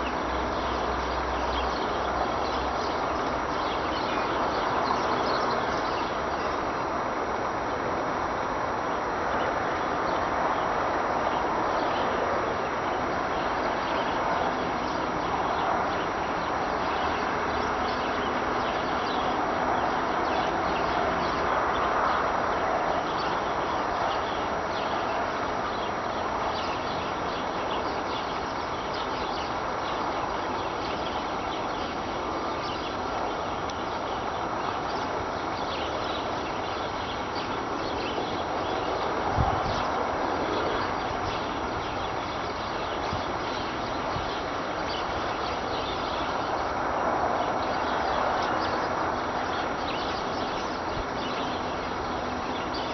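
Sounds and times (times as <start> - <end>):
constant rushing noise: 0.0 - 52.9.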